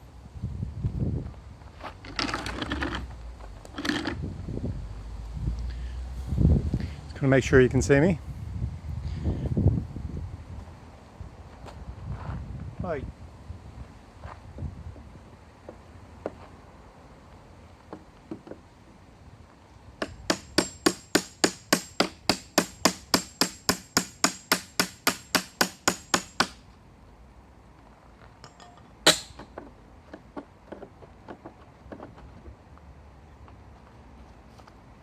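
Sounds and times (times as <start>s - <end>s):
hammer striking metal chisel: 20.0s - 26.6s, 28.4s - 29.5s.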